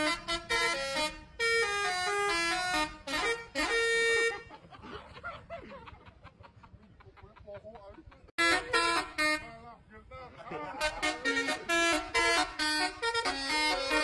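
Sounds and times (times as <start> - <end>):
multi-tone air horn melody: 0.0 - 4.6, 8.4 - 9.8, 10.5 - 14.0
faint voices: 6.7 - 14.0.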